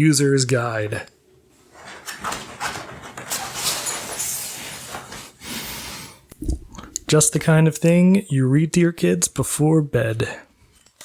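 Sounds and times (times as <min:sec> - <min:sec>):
rustling and handling noise: 0:01.4 - 0:07.2.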